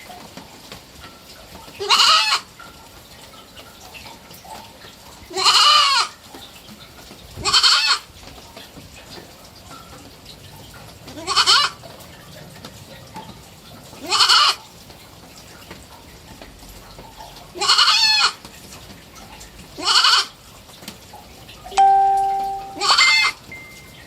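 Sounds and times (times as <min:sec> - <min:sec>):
goat bleating: 0:01.8 - 0:02.4, 0:05.3 - 0:06.1, 0:11.2 - 0:11.8, 0:14.0 - 0:14.6, 0:17.6 - 0:18.4, 0:19.8 - 0:20.3.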